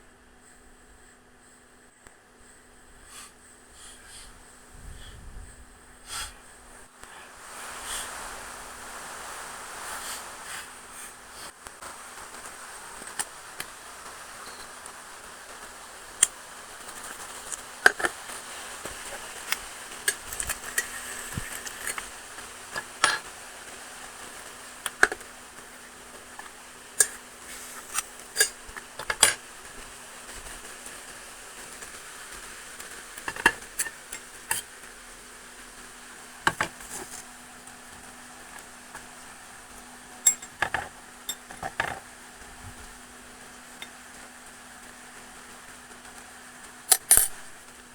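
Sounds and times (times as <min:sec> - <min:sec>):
low steady hum: 0:00.0 - 0:47.9
eggs sizzling in a pan: 0:06.8 - 0:47.9
metal utensil clinking on pan: 0:40.2 - 0:42.0.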